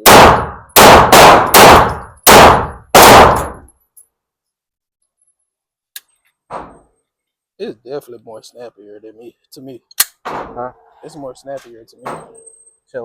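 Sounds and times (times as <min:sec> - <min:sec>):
pistol shots: 0:00.0 - 0:03.6.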